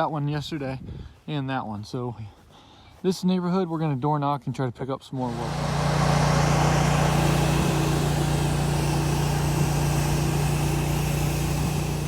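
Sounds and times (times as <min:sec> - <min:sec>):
pressure washer running: 0:05.2 - 0:12.0.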